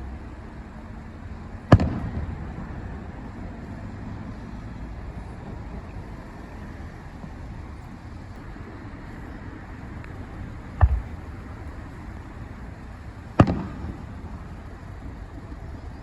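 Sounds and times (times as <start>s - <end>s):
low background rumble: 0.0s - 16.0s
firework shell booming: 1.7s - 2.7s, 10.8s - 11.8s, 13.3s - 14.6s.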